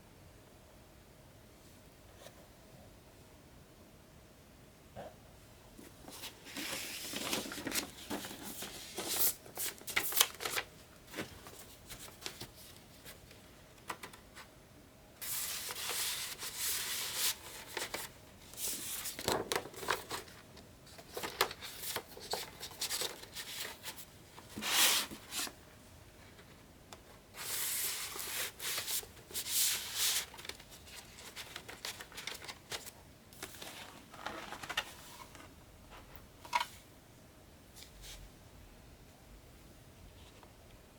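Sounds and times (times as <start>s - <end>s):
paper sleeves sliding and rustling: 15.2s - 20.3s, 21.2s - 25.6s, 27.4s - 35.4s.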